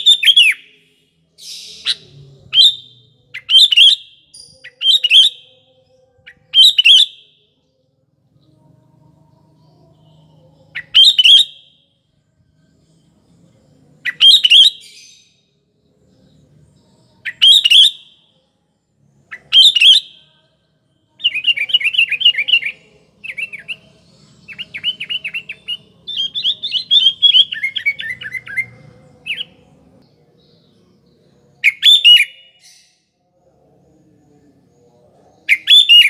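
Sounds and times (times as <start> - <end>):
bulbul calling and singing: 1.4 - 5.6, 9.5 - 11.6, 14.0 - 15.4, 19.3 - 20.3, 21.2 - 29.7.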